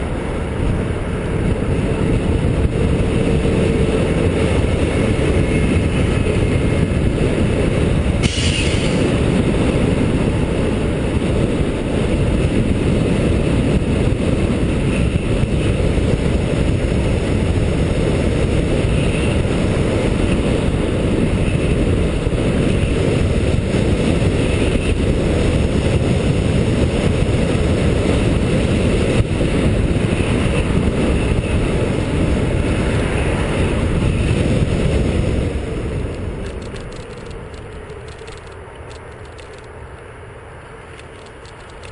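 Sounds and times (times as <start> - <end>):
wind rumbling on microphone: 0.0 - 41.9
short hiss: 8.2 - 9.0.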